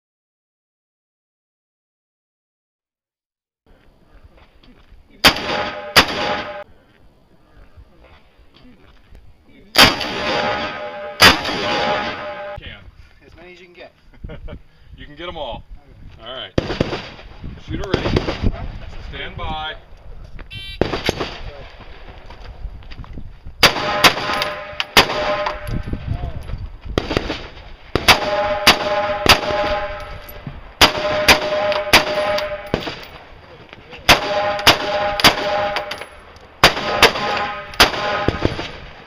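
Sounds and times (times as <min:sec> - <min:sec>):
rifle shots: 0:05.2 - 0:06.6, 0:09.8 - 0:12.6, 0:16.6 - 0:18.6, 0:20.6 - 0:21.6, 0:23.6 - 0:25.8, 0:27.0 - 0:33.2, 0:34.0 - 0:39.0
steel target ringing: 0:10.6 - 0:12.6, 0:28.2 - 0:32.8.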